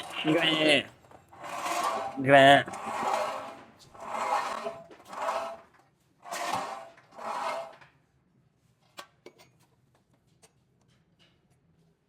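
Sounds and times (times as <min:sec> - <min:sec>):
metal on metal scraping: 0:00.0 - 0:08.0.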